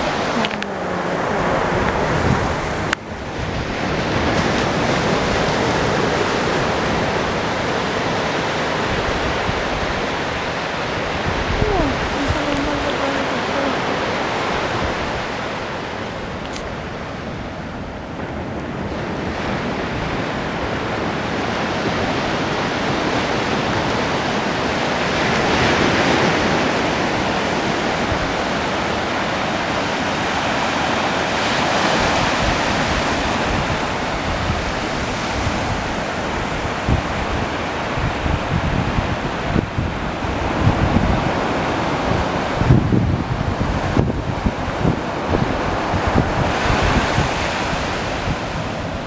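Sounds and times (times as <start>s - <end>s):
ocean waves breaking on beach: 0.0s - 49.0s.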